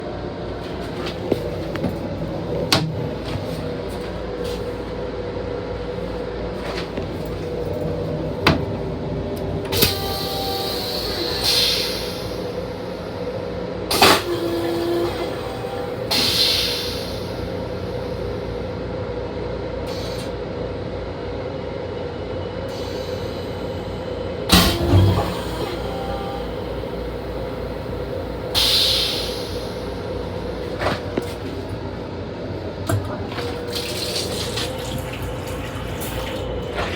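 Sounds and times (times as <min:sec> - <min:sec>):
steady hum: 0:00.0 - 0:13.9
railcar interior hum and rumble: 0:00.0 - 0:36.9.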